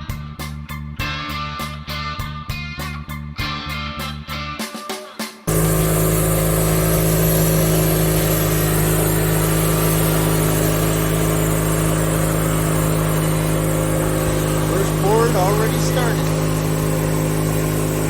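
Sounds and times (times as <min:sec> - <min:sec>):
sawmill engine running: 0:05.5 - 0:18.0.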